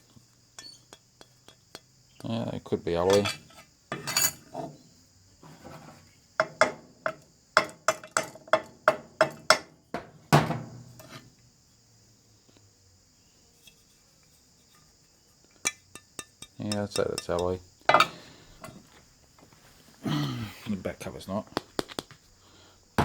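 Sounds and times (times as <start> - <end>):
metal parts tapped and clinked: 3.0 - 4.6, 6.4 - 8.6, 15.6 - 18.8.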